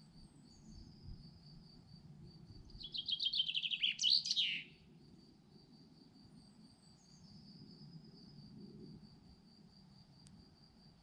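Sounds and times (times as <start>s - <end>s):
songbird singing: 2.6s - 4.8s.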